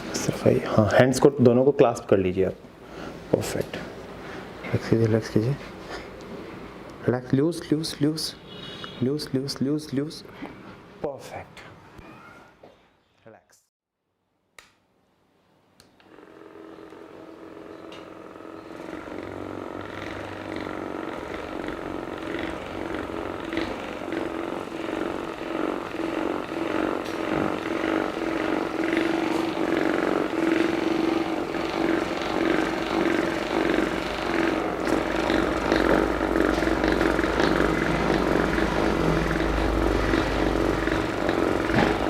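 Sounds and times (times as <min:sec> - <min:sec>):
small motor humming: 0:15.9 - 0:42.0.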